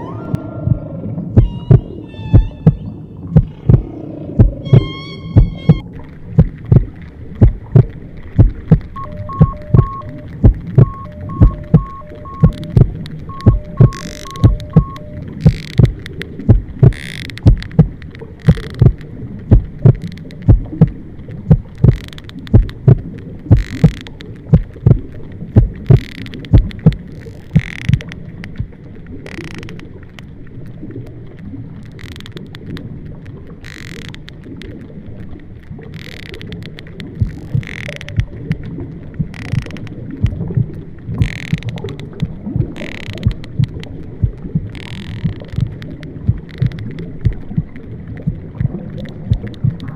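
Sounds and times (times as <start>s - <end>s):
steady low rumble: 0.0s - 29.3s, 36.6s - 49.9s
low heartbeat-like thumps: 0.6s - 27.0s, 37.2s - 38.4s, 42.6s - 47.7s, 48.3s - 49.8s.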